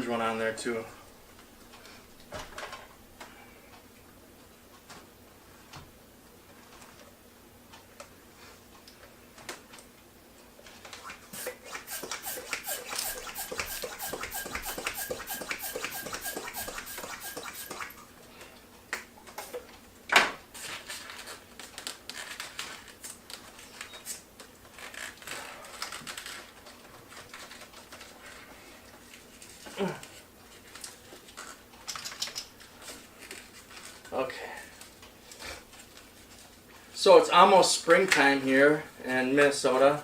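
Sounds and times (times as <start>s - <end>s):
rubber balloons squeaking: 11.2s - 18.0s.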